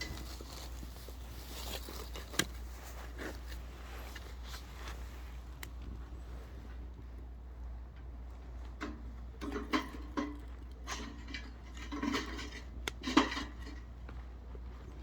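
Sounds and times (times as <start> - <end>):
metal stove clanking and rattling: 8.8 - 14.0.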